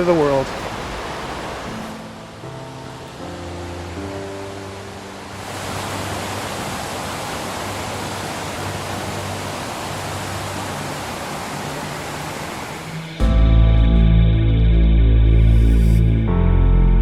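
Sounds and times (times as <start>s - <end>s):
waterfall roaring: 0.0s - 13.2s.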